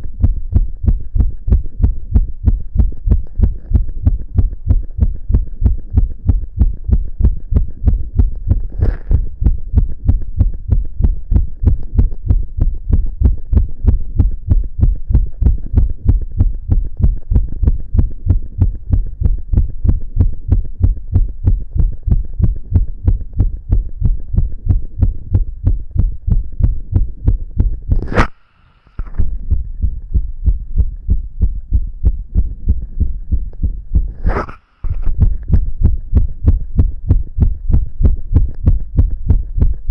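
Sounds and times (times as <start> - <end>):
fast heartbeat thumps: 0.0 - 28.3, 29.0 - 39.9
sharp click: 27.9 - 29.3.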